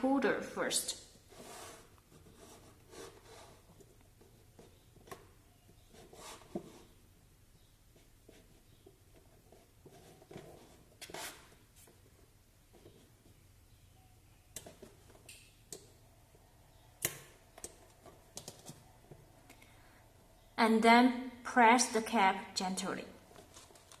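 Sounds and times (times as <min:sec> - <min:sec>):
faint tool scraping plastic: 0:01.3 - 0:07.0, 0:07.9 - 0:13.4.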